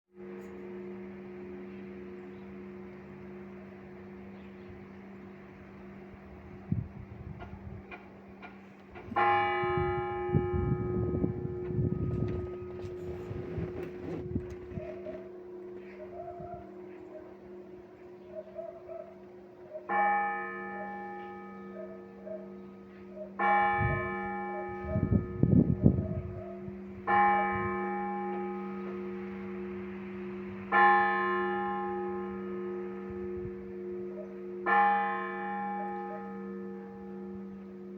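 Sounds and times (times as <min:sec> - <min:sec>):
church bell hum: 0:00.1 - 0:37.9
loud low rumbling noise: 0:00.8 - 0:15.0
heavy low bell stroke: 0:19.9 - 0:37.9.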